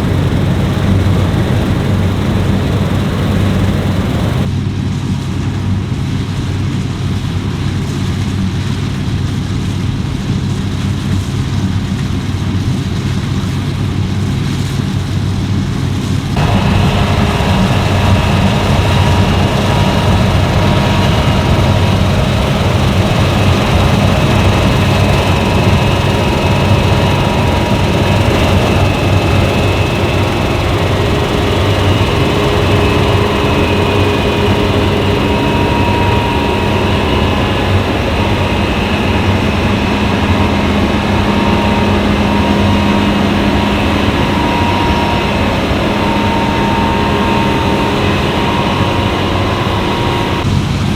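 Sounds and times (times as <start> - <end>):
combine harvester droning: 0.0 - 4.5, 16.4 - 50.5
faint steady whine: 0.0 - 4.5, 16.4 - 50.4.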